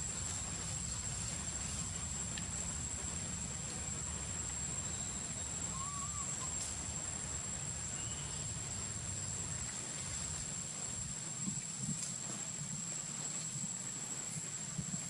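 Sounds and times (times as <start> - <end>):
high insect drone: 0.0 - 15.0
low wind rumble: 0.0 - 15.0
faint wavering chirp: 4.8 - 6.8.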